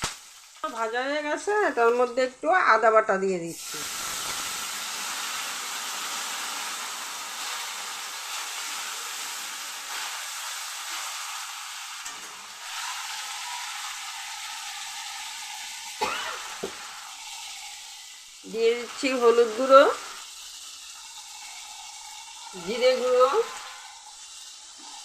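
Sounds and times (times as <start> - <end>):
spices sizzling in hot oil: 0.0 - 25.0.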